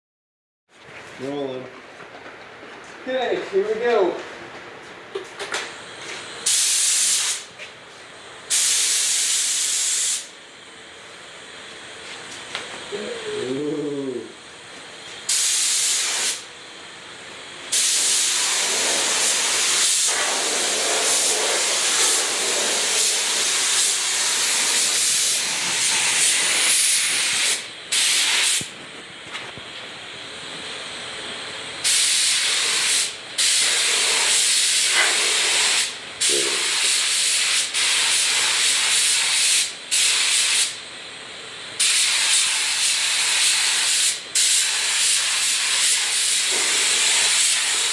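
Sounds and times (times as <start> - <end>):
paint spray gun hissing: 6.4 - 7.5, 8.5 - 10.4, 15.2 - 16.5, 17.7 - 28.7, 31.8 - 40.8, 41.8 - 47.9.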